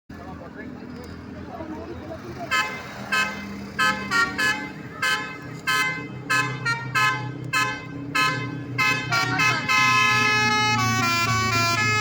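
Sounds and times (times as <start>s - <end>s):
bus horn playing notes: 2.5s - 12.0s.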